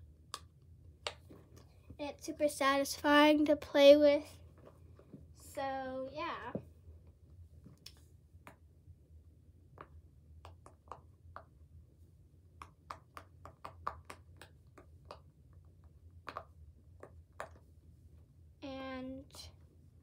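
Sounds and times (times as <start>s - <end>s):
fidget toy bubbles popping: 16.2s - 17.6s.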